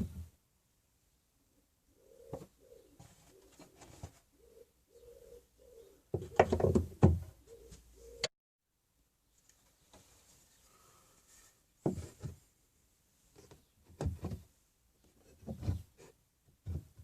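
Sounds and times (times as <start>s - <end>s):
pigeon cooing: 1.9s - 8.3s.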